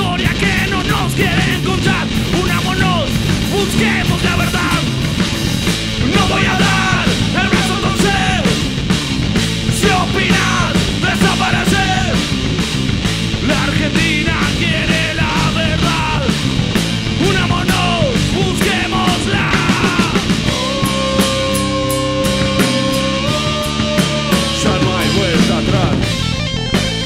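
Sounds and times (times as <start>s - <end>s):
person yelling vocals: 0.0s - 5.0s, 6.0s - 8.6s, 17.2s - 26.1s
drum beat: 0.0s - 27.0s
rock band playing live: 0.0s - 27.0s.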